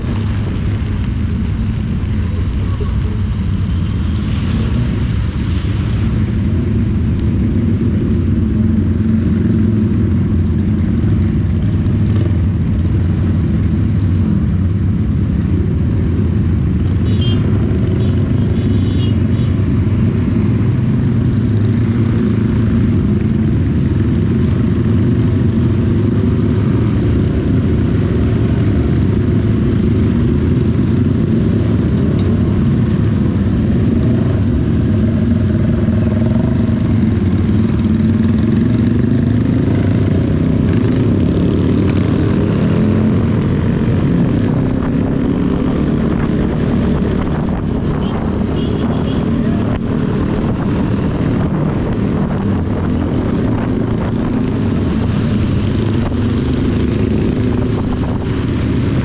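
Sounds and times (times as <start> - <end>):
hiss of rain and road spray: 0.0 - 7.2.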